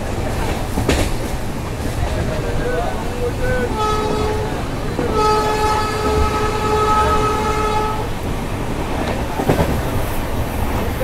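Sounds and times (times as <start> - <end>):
train coach rumbling on track: 0.0 - 11.0
train horn chord: 2.6 - 8.2.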